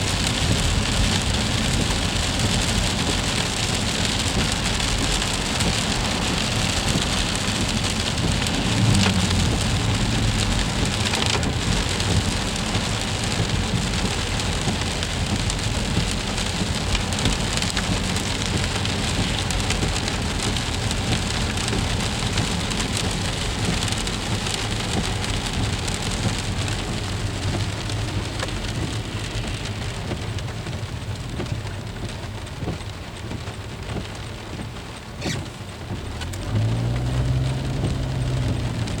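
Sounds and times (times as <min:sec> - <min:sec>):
freezing rain pattering: 0:00.0 - 0:39.0
low rumble: 0:07.2 - 0:12.7, 0:26.4 - 0:31.7.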